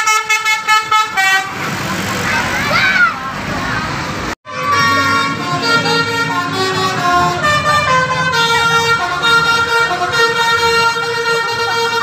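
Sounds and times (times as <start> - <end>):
musical air horn playing tune: 0.0 - 1.6, 4.5 - 12.0.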